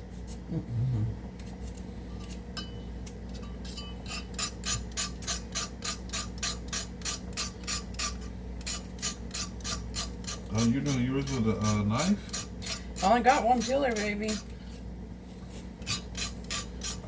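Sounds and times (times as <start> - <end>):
vegetable peeler scraping potato: 3.7 - 14.8, 15.5 - 17.0.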